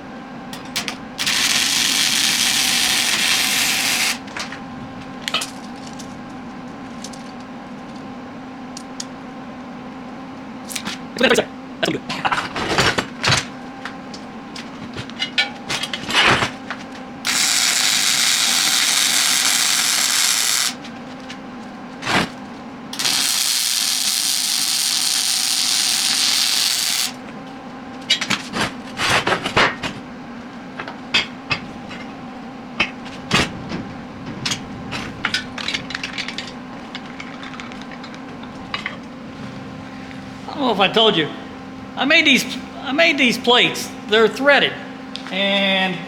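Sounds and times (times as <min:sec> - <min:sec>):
power tool driving bolts: 0:17.3 - 0:20.8
metal parts clanking: 0:33.7 - 0:38.2.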